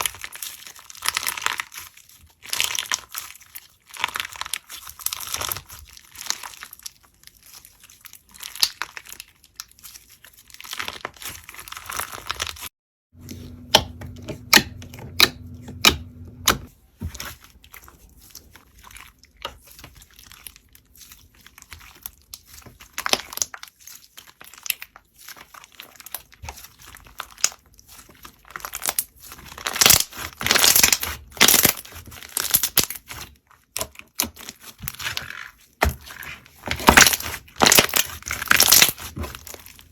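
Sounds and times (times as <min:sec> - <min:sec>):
slime crackling and popping: 0:28.4 - 0:35.3, 0:36.1 - 0:39.9.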